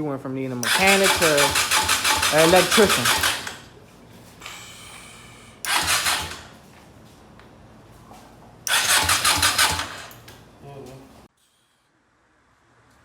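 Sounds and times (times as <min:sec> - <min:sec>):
electric starter cranking engine: 0:00.6 - 0:03.7, 0:05.6 - 0:06.6, 0:08.7 - 0:10.3.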